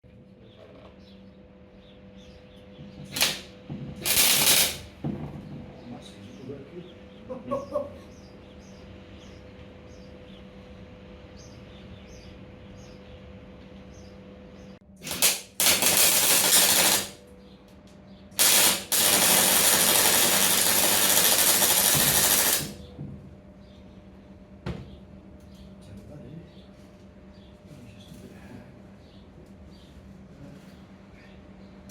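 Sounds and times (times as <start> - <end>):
steady electrical hum: 0.1 - 31.9
arc welding crackle: 3.1 - 5.0, 15.0 - 17.2, 18.4 - 22.8.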